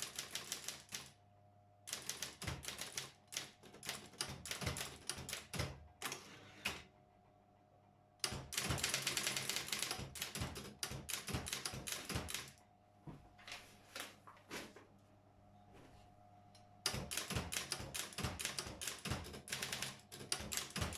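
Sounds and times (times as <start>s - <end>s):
typewriter motor humming: 0.0s - 1.1s, 1.9s - 6.3s, 8.2s - 12.5s, 16.8s - 20.9s
typewriter key strikes: 8.2s - 12.5s, 16.8s - 20.9s.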